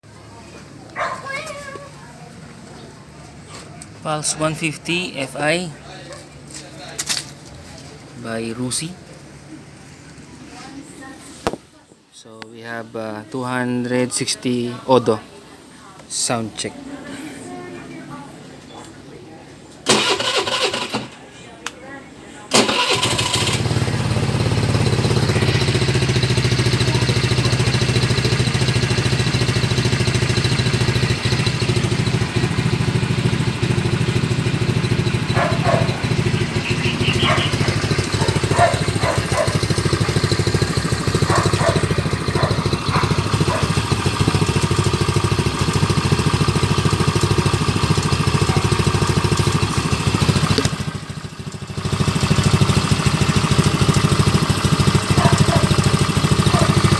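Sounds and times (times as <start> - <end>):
motorcycle engine idling: 22.6 - 56.9.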